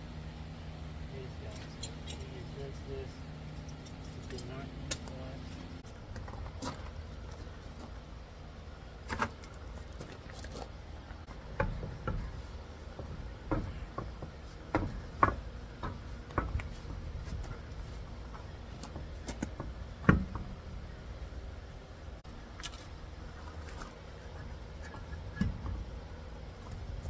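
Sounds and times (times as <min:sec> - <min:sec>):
steady low rumble: 0:00.0 - 0:27.0
metal tools clicking and clanking: 0:01.4 - 0:02.8, 0:03.5 - 0:05.3.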